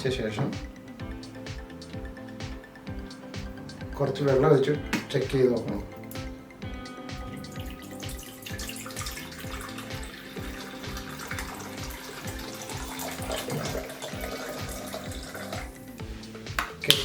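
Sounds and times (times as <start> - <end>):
background music with steady beat: 0.0 - 17.0
tap water running into kettle: 7.5 - 15.8.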